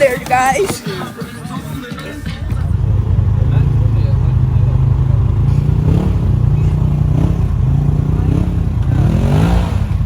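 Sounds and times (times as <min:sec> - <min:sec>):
utv engine revving: 0:02.3 - 0:10.0.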